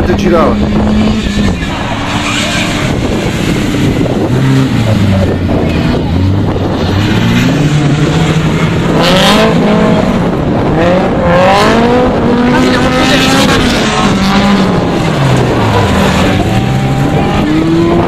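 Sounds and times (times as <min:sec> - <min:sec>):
race car engines revving: 0:00.0 - 0:18.0.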